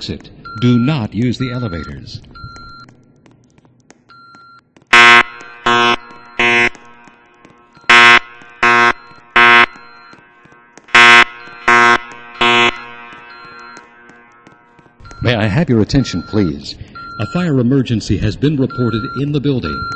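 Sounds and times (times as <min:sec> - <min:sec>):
fire alarm horn blasts: 0:04.9 - 0:07.0, 0:07.8 - 0:10.2, 0:10.9 - 0:14.4.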